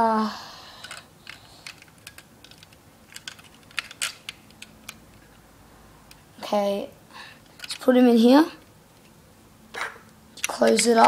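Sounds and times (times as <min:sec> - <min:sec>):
plastic toy bricks clicking: 0:00.8 - 0:05.1, 0:07.5 - 0:07.9, 0:10.4 - 0:11.0.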